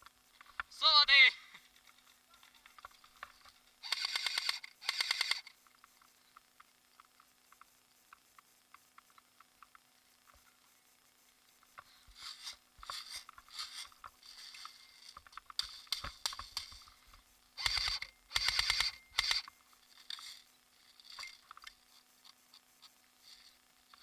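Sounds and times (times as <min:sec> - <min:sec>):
rustling and clicking: 0:01.6 - 0:10.7, 0:11.5 - 0:24.0
airsoft gun firing bursts: 0:03.8 - 0:05.5, 0:17.6 - 0:19.5.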